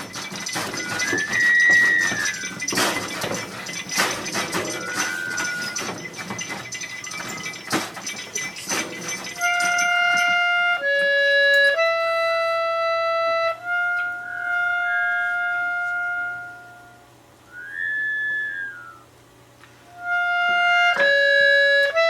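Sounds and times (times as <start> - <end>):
wind instrument long held notes: 0.0 - 6.0, 9.3 - 19.1, 19.9 - 22.0
noisy clatter: 0.0 - 11.8.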